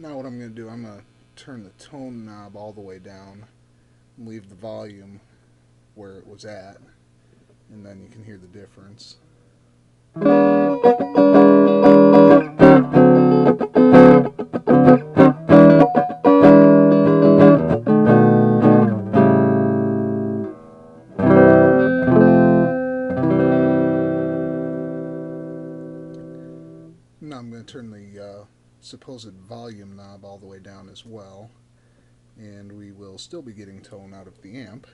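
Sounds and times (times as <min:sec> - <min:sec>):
electric guitar notes and chords: 0:10.2 - 0:27.0.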